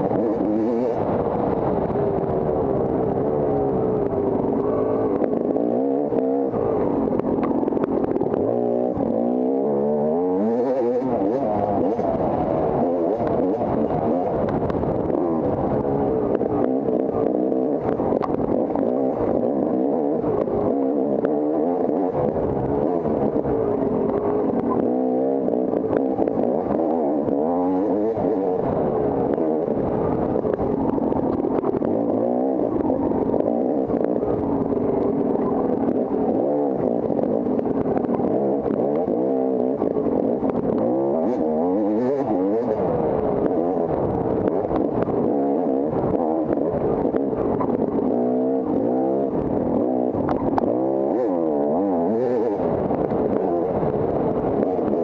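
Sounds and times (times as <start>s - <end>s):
off-road motorcycle engine revving: 0.0s - 55.0s.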